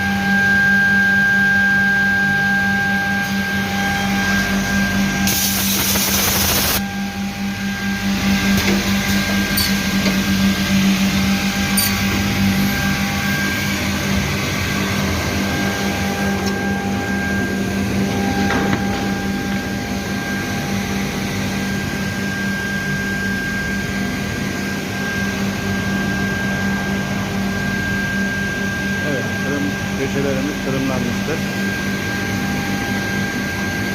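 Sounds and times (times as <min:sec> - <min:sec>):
machine humming and whining: 0:00.0 - 0:33.9
loud hiss: 0:05.3 - 0:06.8.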